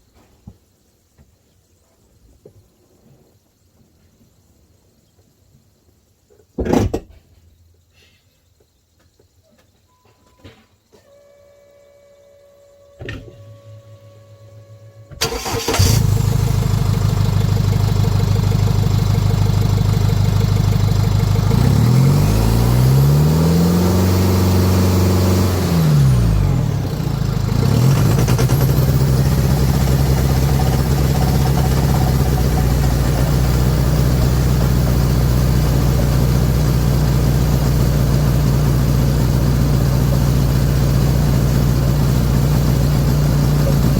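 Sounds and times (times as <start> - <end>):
ignition click: 15.1 - 16.2
diesel engine idling and revving: 15.2 - 43.9.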